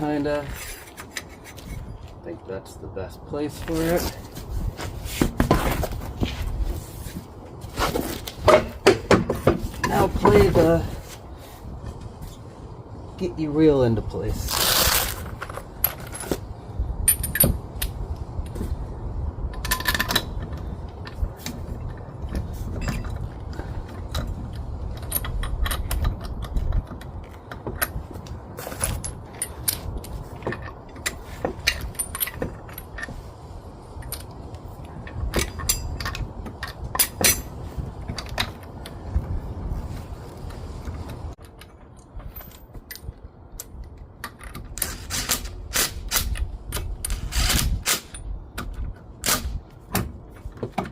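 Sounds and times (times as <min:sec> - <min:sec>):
metal wheel hardware clinking: 0:14.3 - 0:18.6, 0:19.4 - 0:39.1.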